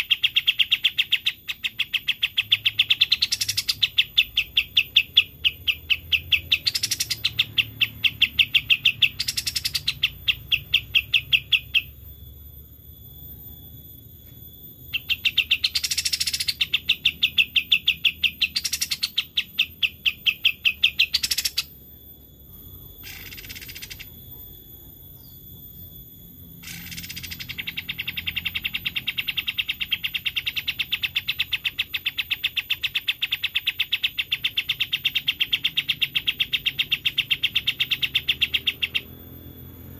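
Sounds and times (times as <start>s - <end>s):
bird chirping trill: 0.0s - 39.9s.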